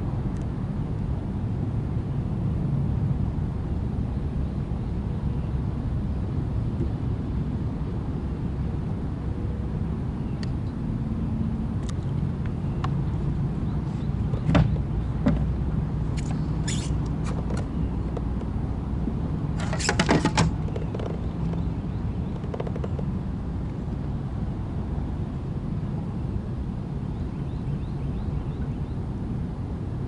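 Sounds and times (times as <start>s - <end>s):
boat motor humming: 3.8s - 25.5s
sharp clicks and rattles: 19.6s - 23.1s.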